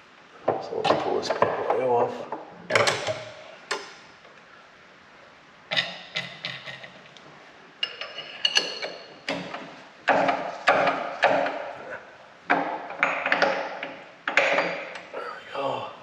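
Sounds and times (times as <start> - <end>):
metal tools clanking: 7.8 - 11.6.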